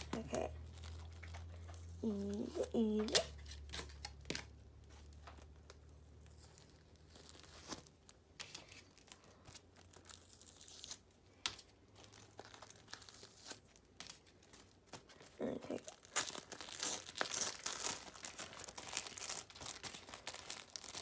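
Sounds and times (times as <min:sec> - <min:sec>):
packaging crinkling and tearing: 0:00.0 - 0:21.0
small clicks and rustles: 0:00.2 - 0:10.0.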